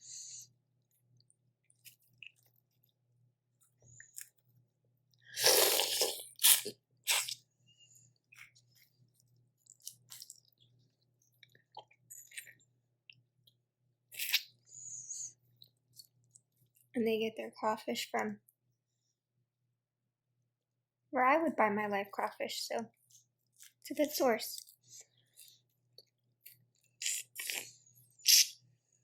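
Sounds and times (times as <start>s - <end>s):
chewing close to microphone: 8.3s - 12.6s.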